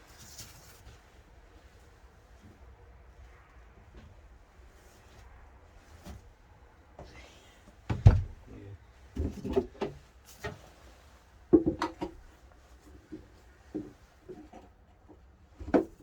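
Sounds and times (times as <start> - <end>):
objects knocking and clunking: 7.9 - 8.4, 9.2 - 10.6, 11.5 - 12.3, 13.0 - 16.0.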